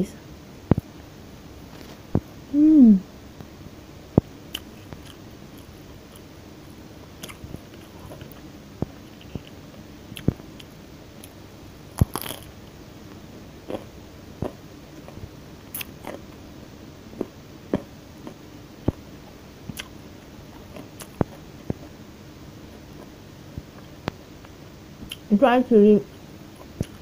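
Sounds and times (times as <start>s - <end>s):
chewing and crunching food: 4.5s - 6.3s, 7.0s - 12.6s, 13.6s - 16.4s, 17.2s - 19.1s, 19.7s - 22.0s, 22.7s - 25.3s, 26.1s - 27.0s
wet mouth clicks: 15.7s - 15.9s.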